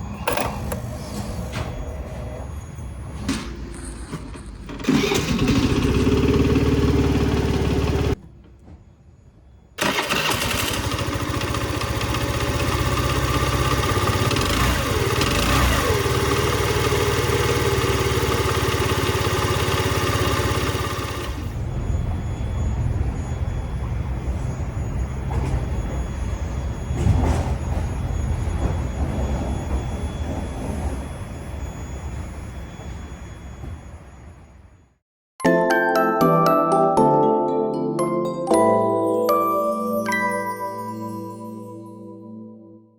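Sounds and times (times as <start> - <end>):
scooter engine running: 4.7 - 8.2, 9.8 - 21.7.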